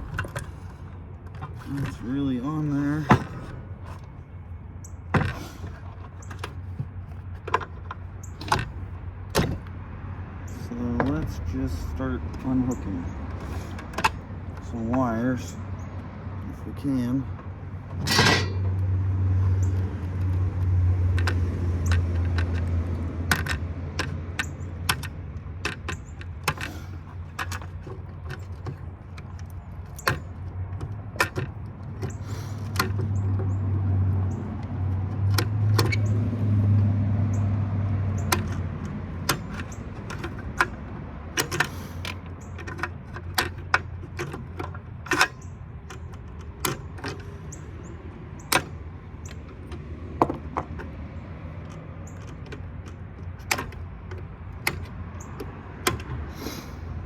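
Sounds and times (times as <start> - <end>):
hand tools clinking on metal: 17.9 - 18.9.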